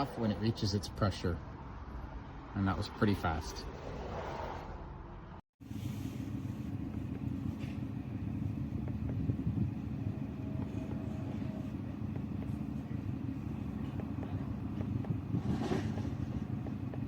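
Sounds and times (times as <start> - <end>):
low mechanical rumble: 5.6 - 17.0.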